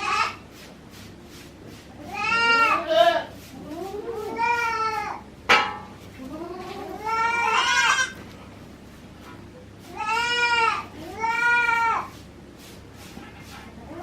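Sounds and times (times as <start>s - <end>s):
goat kid bleating: 0.0s - 0.4s, 2.0s - 5.2s, 6.2s - 8.3s, 9.8s - 12.2s.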